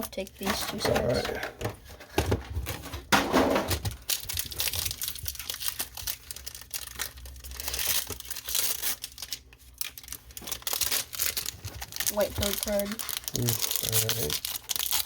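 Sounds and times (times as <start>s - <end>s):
wrappers being torn and crinkled: 3.7s - 15.0s.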